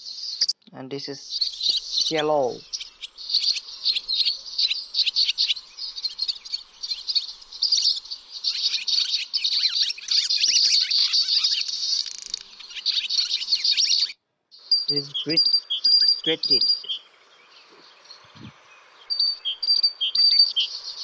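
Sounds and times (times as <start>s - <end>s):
songbird twittering: 0.0s - 21.0s.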